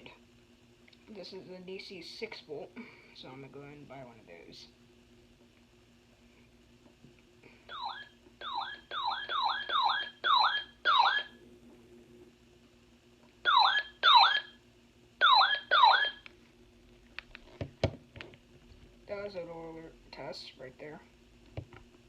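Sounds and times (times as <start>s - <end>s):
electronic siren chirps: 7.7s - 11.4s, 13.5s - 14.6s, 15.2s - 16.2s.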